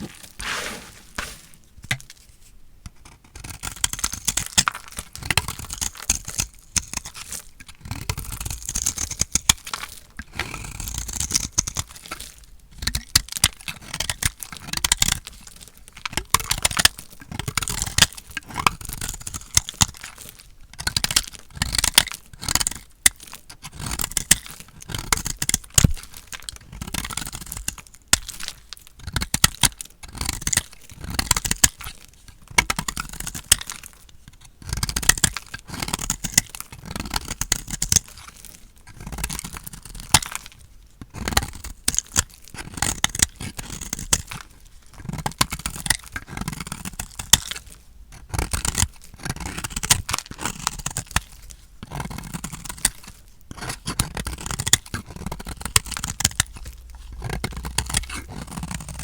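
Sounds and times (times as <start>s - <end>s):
knife cutting bar soap: 0.0s - 2.3s, 20.8s - 59.0s.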